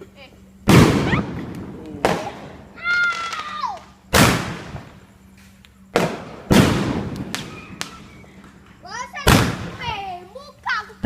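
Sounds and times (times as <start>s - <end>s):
firecracker bangs: 0.6s - 5.0s, 5.9s - 10.2s.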